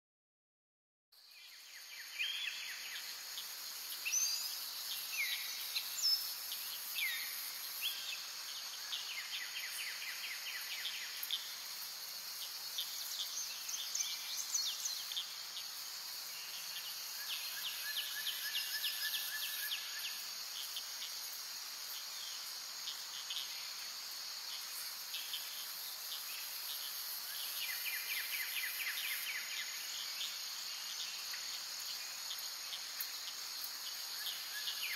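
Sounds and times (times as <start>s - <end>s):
insect drone: 1.2s - 34.9s.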